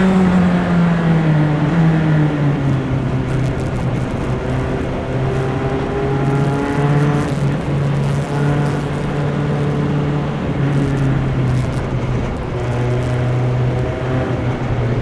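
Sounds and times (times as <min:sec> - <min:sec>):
race car engine at high speed: 0:00.0 - 0:15.0.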